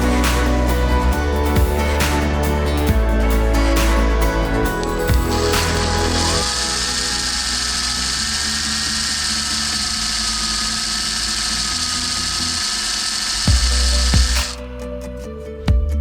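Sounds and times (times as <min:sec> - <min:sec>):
small power tool whining: 0:04.8 - 0:14.6.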